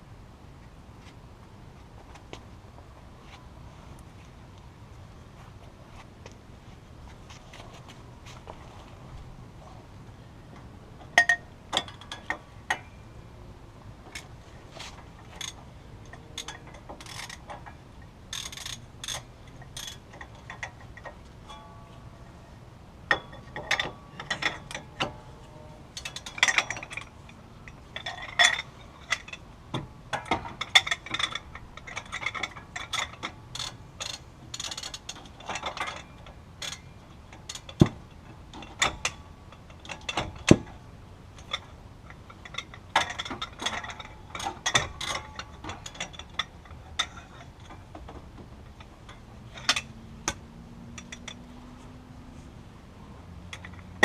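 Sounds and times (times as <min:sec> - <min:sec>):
metallic clinks: 0:15.3 - 0:25.3.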